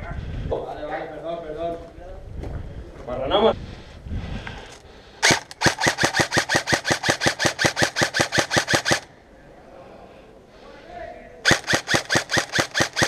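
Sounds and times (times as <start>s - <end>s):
airsoft gun full-auto burst: 5.2s - 9.1s, 11.4s - 13.0s.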